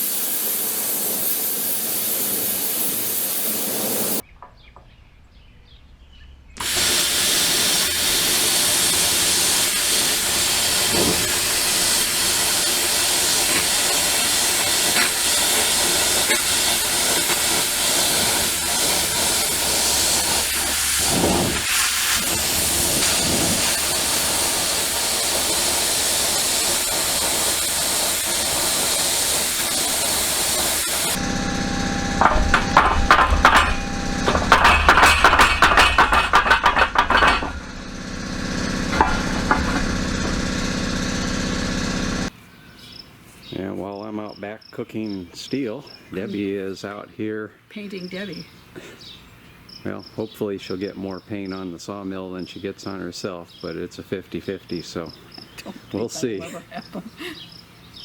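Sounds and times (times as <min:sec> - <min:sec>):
cutting torch hissing: 0:00.0 - 0:04.2, 0:06.6 - 0:42.3.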